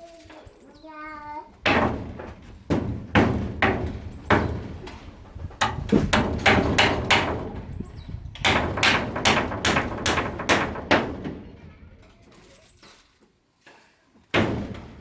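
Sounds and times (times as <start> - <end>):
tool knocking on wood: 1.6 - 7.6, 8.4 - 11.4.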